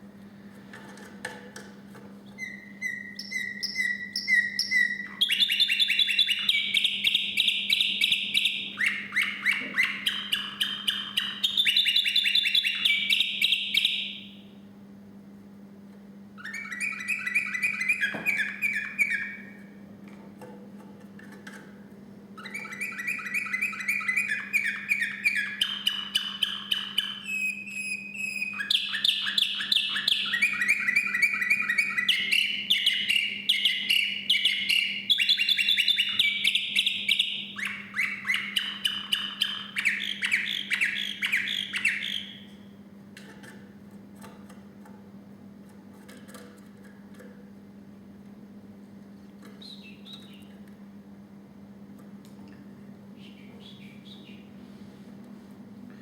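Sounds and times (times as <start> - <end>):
canary singing trills: 2.4 - 14.5, 16.4 - 19.8, 22.4 - 42.8, 49.5 - 50.6, 53.2 - 54.6
steady low hum: 36.2 - 56.0.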